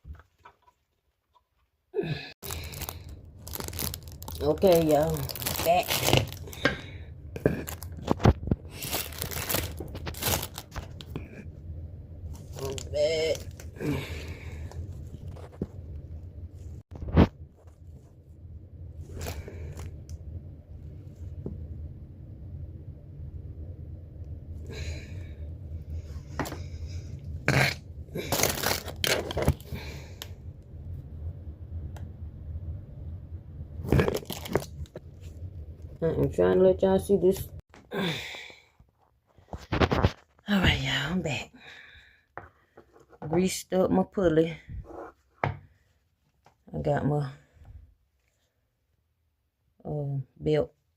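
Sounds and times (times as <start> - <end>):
steady low hum: 2.0 - 46.2
rustling and crinkling handling: 2.4 - 11.3, 12.2 - 13.8, 33.9 - 36.6.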